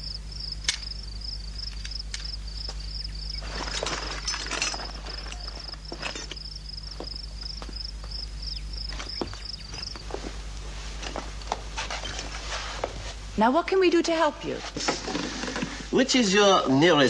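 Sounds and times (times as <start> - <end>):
insect chirping trills: 0.0 - 12.8
light knocks and steps: 1.6 - 13.4.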